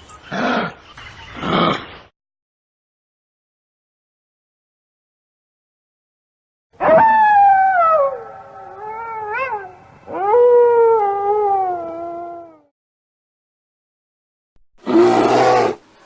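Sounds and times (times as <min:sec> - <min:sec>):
dog howling: 0:06.8 - 0:12.7.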